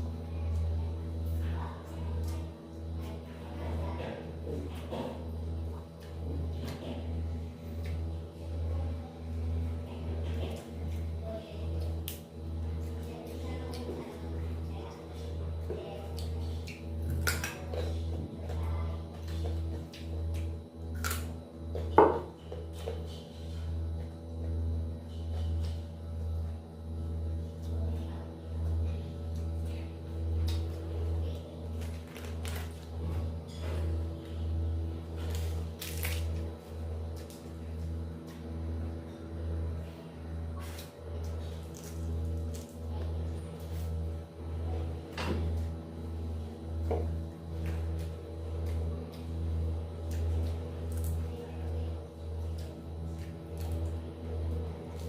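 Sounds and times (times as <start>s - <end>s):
low pulsing hum: 0.0s - 55.0s
person crunching raw vegetables: 20.9s - 21.3s, 35.2s - 36.4s, 41.6s - 42.8s.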